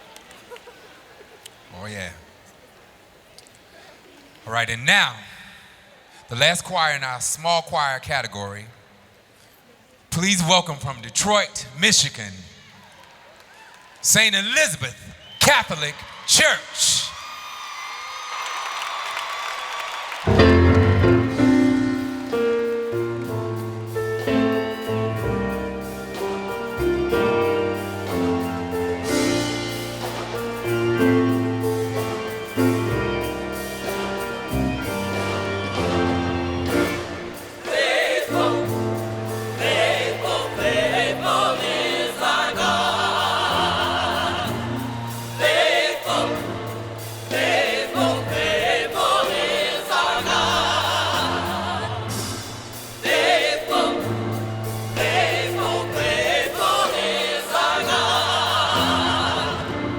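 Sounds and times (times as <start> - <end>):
choir singing: 24.3 - 59.9.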